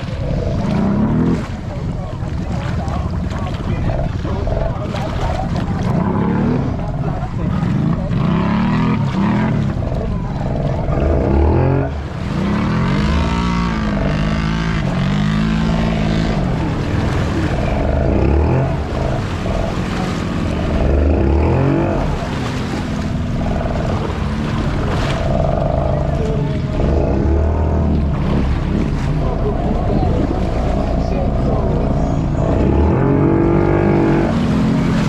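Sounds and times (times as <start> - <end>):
atv engines revving: 0.0 - 35.0.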